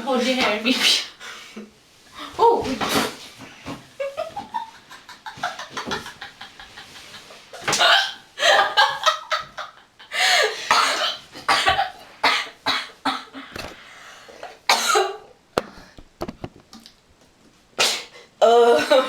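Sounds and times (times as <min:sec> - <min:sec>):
woman coughing: 0:07.6 - 0:08.7, 0:10.4 - 0:13.4, 0:14.7 - 0:15.3.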